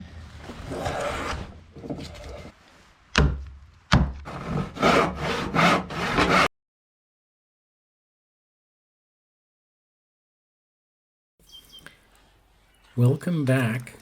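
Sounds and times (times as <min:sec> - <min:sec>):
hand plane cutting wood: 0:04.2 - 0:06.5.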